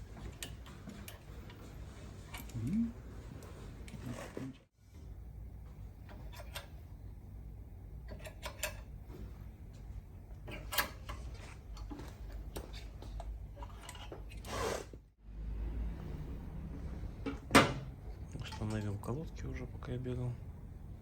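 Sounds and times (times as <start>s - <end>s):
steady low hum: 0.0s - 13.8s.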